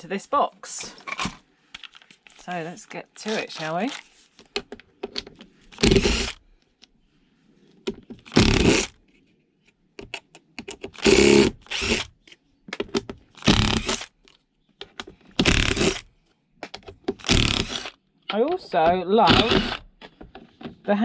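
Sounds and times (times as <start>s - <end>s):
cordless drill driving screws: 5.7s - 6.4s, 8.2s - 9.0s, 10.9s - 12.1s, 13.4s - 14.1s, 15.4s - 16.0s, 17.2s - 18.0s, 19.2s - 19.9s.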